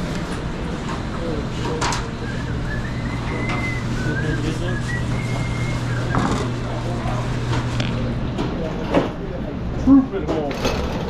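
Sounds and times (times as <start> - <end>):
equipment humming: 0.0 - 11.0
faint high whistled tune: 2.2 - 6.2.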